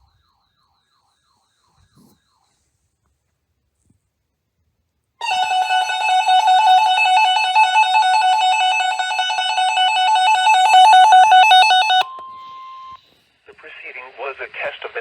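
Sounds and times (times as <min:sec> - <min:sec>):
weather radio alarm warbling beep: 0:05.2 - 0:13.0.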